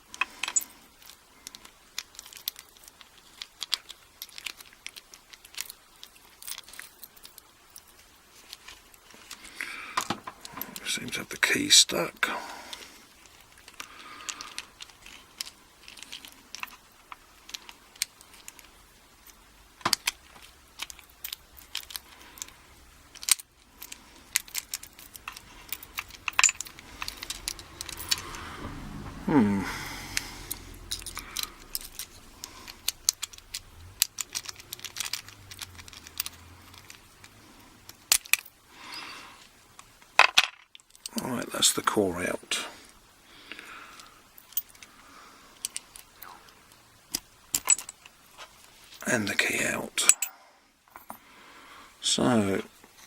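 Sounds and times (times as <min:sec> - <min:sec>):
small metal clicks and rattles: 0:00.0 - 0:11.5, 0:12.7 - 0:28.8, 0:30.1 - 0:42.0, 0:42.9 - 0:49.0
metal sliding sound: 0:23.2 - 0:37.4.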